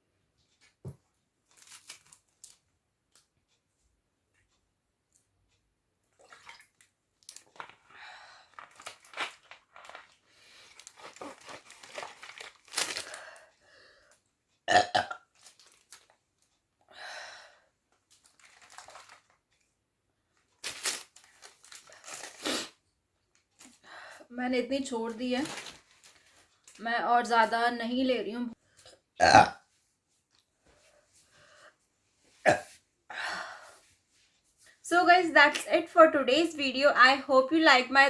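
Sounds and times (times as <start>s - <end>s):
woman burping: 14.7s - 15.2s, 29.2s - 29.6s, 32.4s - 32.7s.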